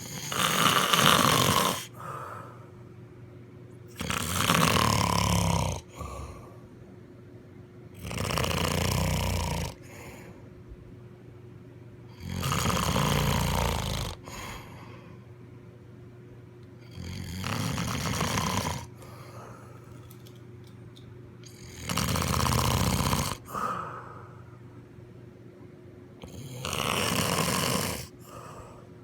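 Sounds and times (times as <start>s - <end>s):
loud snoring: 0.0s - 2.2s, 3.9s - 6.5s, 8.0s - 10.2s, 12.1s - 14.7s, 16.8s - 19.2s, 21.4s - 23.8s, 26.2s - 28.6s
quiet breathing: 1.7s - 3.0s, 5.8s - 6.8s, 9.7s - 10.6s, 13.4s - 15.4s, 18.8s - 20.1s, 23.3s - 24.7s, 28.0s - 29.0s.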